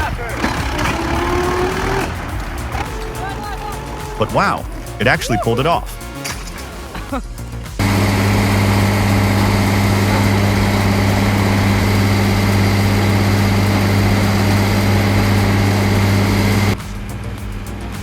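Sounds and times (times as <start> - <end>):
tree shredder running: 0.0 - 5.2, 7.8 - 16.8
machinery hiss: 0.0 - 18.0.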